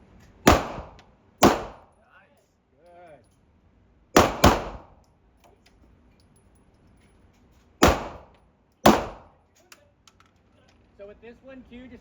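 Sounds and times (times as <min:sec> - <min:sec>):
pistol shots: 0:00.5 - 0:01.9, 0:04.2 - 0:05.0, 0:07.8 - 0:09.4.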